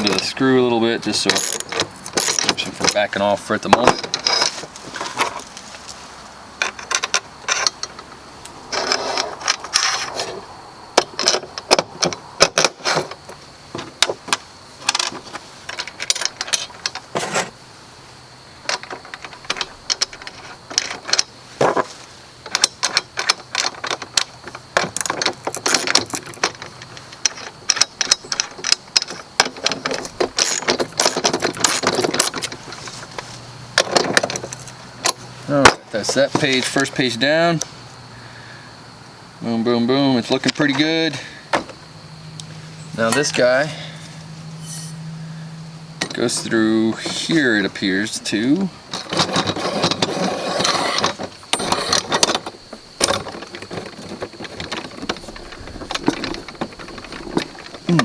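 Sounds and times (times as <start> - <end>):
metal hardware clinking and rattling: 0.0 - 5.5, 6.6 - 8.1, 11.0 - 13.3, 14.0 - 17.5, 18.7 - 37.5, 42.8 - 45.1, 46.0 - 58.0.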